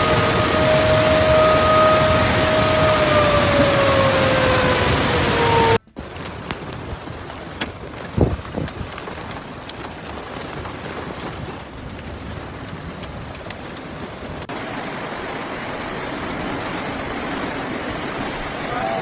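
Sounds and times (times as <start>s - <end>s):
heavy rain pouring: 0.0s - 11.5s, 12.1s - 19.0s
rush of water: 0.0s - 19.0s
raindrops ticking: 5.8s - 17.5s.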